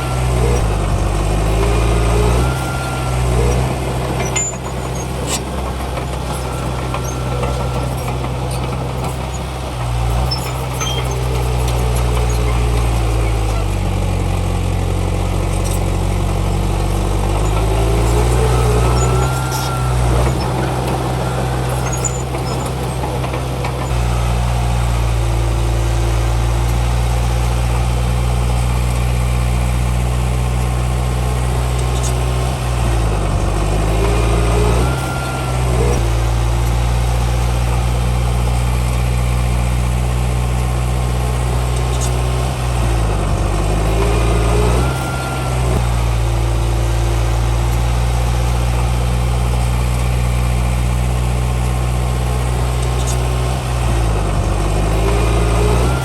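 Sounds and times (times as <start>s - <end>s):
short squealing glides: 0.0s - 14.4s, 15.1s - 25.0s, 30.6s - 36.3s, 40.6s - 46.1s, 48.7s - 56.0s
bulldozer diesel engine under load: 0.0s - 56.0s.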